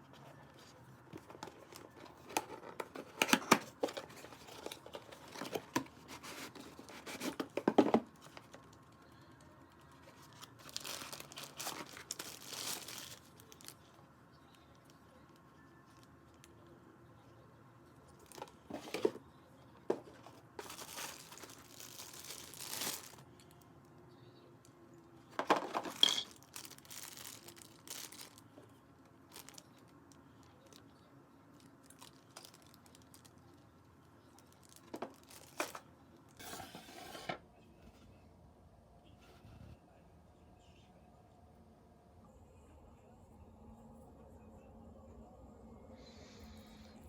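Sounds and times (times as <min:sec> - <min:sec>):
crinkling and rustling: 0:00.0 - 0:16.7, 0:18.1 - 0:24.4, 0:25.2 - 0:38.2.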